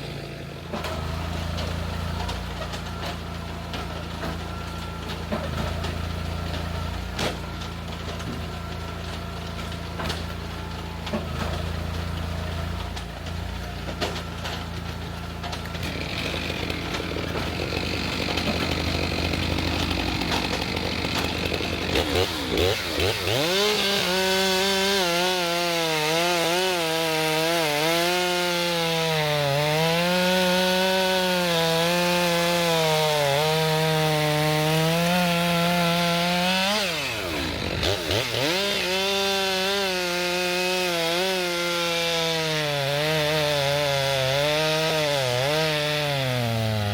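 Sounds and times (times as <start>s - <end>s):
chainsaw idling and cutting log: 0.0s - 46.9s.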